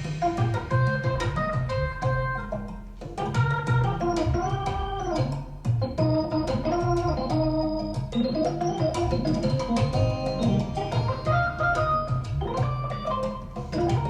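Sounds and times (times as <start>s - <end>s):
rock organ with bass and drums: 3.5s - 14.0s.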